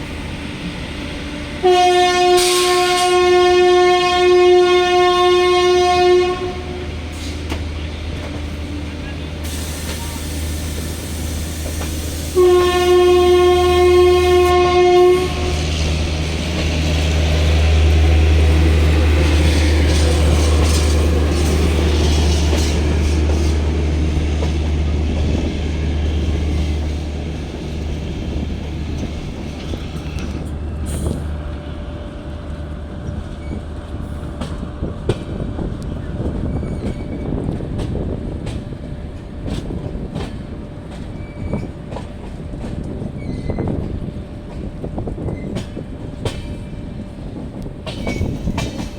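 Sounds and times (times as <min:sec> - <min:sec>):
train passing rumble: 0:00.0 - 0:48.9
train horn blast: 0:01.6 - 0:07.0, 0:12.3 - 0:15.9.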